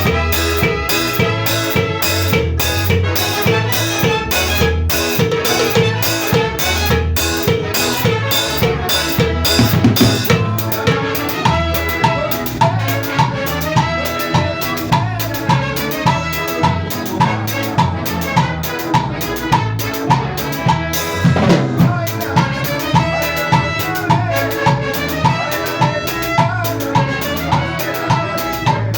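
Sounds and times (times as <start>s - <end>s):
melody instrument: 0.0s - 15.1s
bass: 0.0s - 28.9s
drum kit: 0.0s - 28.9s.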